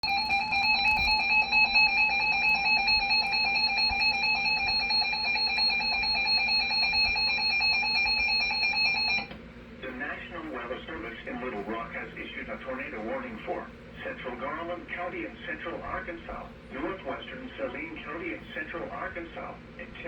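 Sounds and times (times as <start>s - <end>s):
two-tone electronic alarm: 0.0s - 9.4s.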